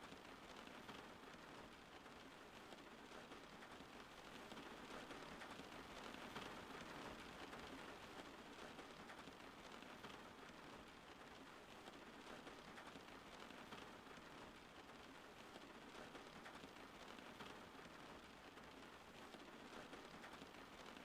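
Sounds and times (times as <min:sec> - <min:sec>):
faint steady rain: 0:00.0 - 0:21.0.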